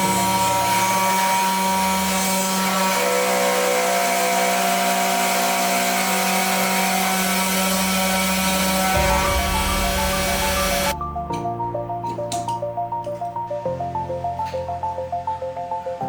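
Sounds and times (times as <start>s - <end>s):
router spindle cutting wood: 0.0s - 10.9s.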